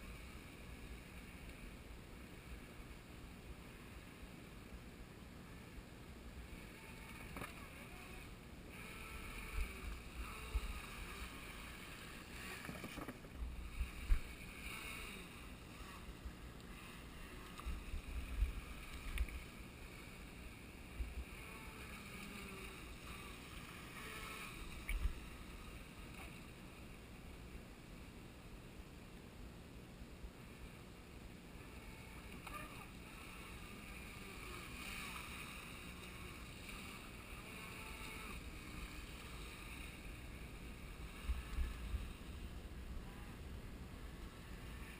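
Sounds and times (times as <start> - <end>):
electric motor whining: 6.5 - 26.4, 31.6 - 42.0.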